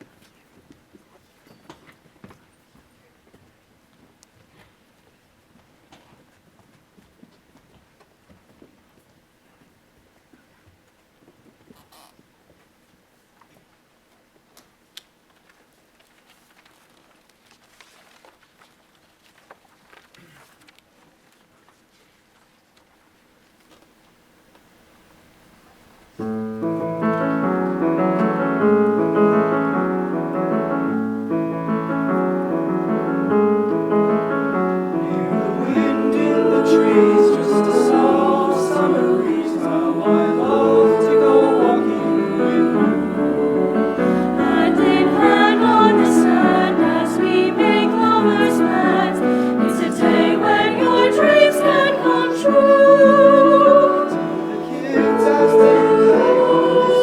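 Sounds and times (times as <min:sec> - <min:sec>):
choir singing: 0:26.2 - 0:57.0
piano accompaniment: 0:26.2 - 0:57.0.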